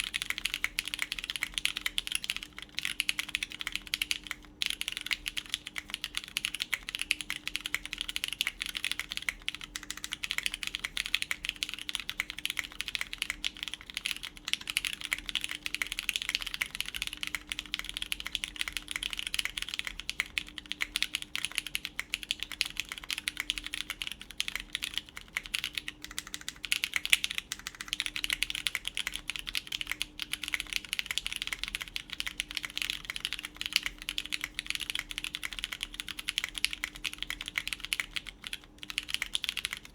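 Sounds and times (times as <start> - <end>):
fast typing on mechanical keyboard: 0.0 - 39.9.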